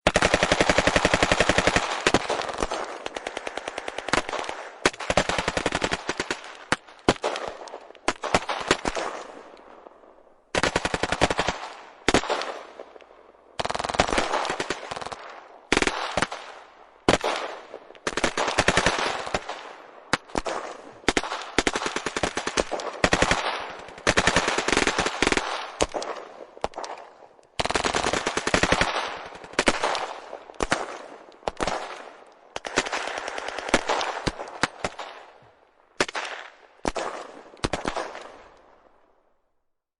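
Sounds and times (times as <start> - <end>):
automatic gunfire bursts: 0.1 - 9.3, 10.6 - 12.8, 13.6 - 35.2.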